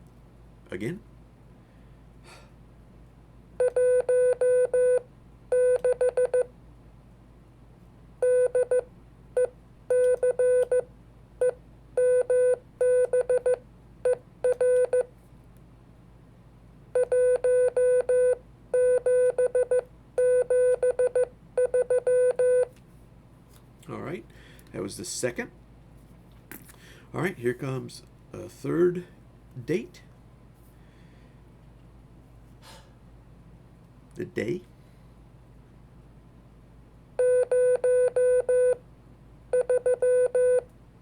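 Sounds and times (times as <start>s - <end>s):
morse code beeps: 3.6s - 6.5s, 9.4s - 10.8s, 11.4s - 15.1s, 17.0s - 22.7s, 37.2s - 38.8s, 39.6s - 40.6s.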